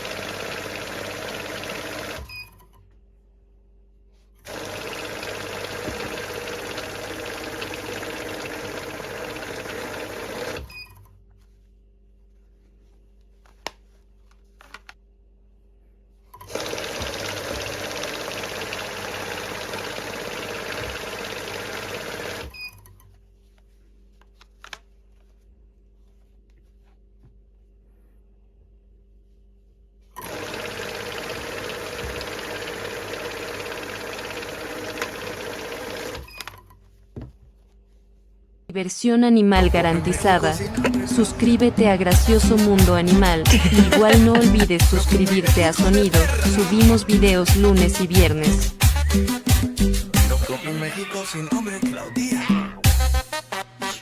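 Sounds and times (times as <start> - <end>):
banknote counting machine whirring: 0.0 - 2.3, 4.5 - 10.7, 16.4 - 22.5, 30.2 - 36.2, 39.6 - 50.6.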